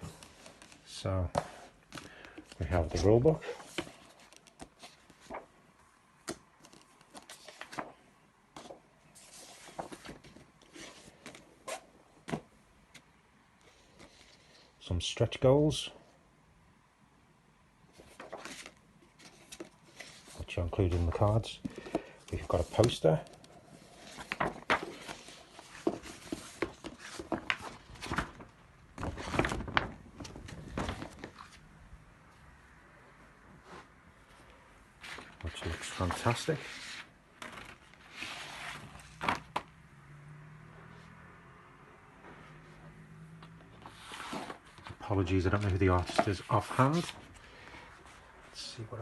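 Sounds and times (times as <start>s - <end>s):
paper and card rustling: 0.0s - 5.6s, 6.2s - 14.7s, 17.9s - 31.6s, 35.0s - 39.6s, 43.8s - 48.3s.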